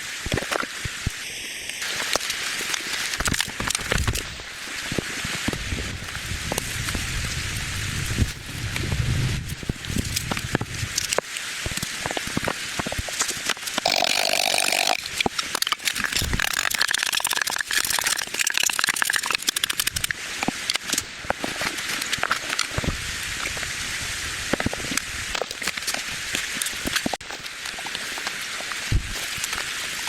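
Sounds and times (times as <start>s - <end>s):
steady rain: 0.0s - 30.0s
raindrops ticking on surfaces: 1.7s - 21.0s.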